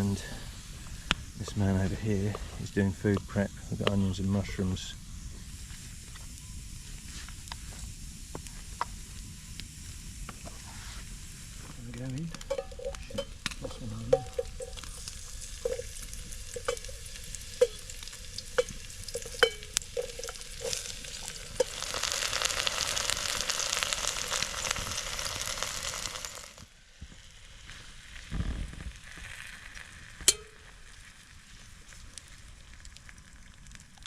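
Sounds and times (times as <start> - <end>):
food sizzling in a pan: 0.0 - 34.0
metal utensil tapping on pan: 12.3 - 15.0, 16.5 - 17.0, 17.6 - 20.8, 30.3 - 30.6.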